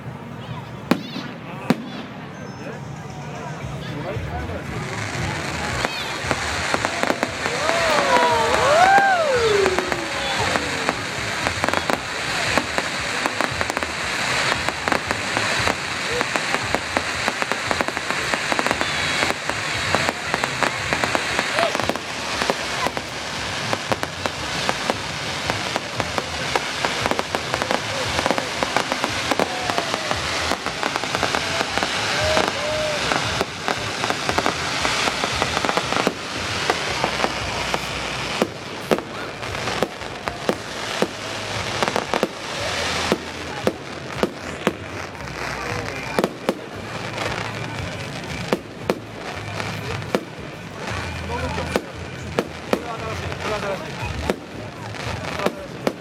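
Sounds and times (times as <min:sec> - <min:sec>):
fireworks crackling and banging: 0:00.0 - 0:56.0.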